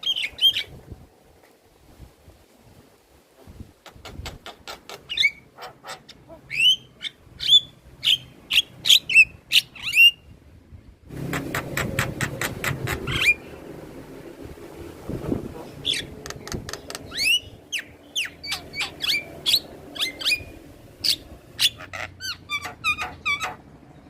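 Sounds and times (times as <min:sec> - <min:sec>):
bird clicking and whistling: 0:11.3 - 0:13.4, 0:15.9 - 0:20.5.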